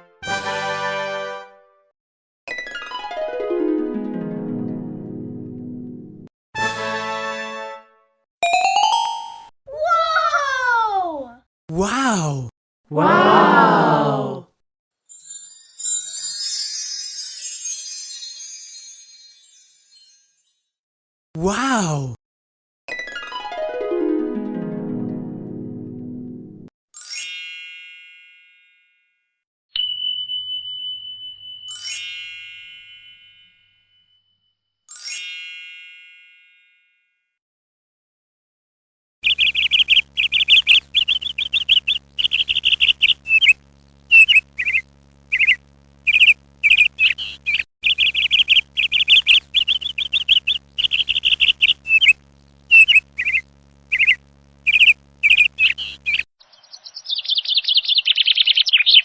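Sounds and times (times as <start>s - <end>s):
bright ringing dings: 29.8s - 37.0s
rapid bird chirping: 39.2s - 59.0s.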